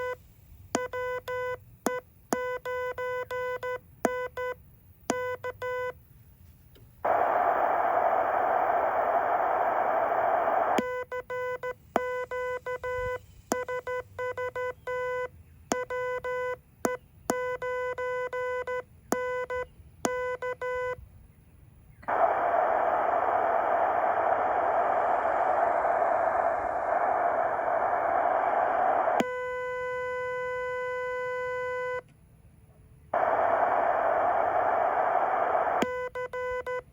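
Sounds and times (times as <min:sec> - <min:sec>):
radio receiver hiss: 0:06.5 - 0:12.0, 0:21.9 - 0:29.4, 0:33.1 - 0:36.1.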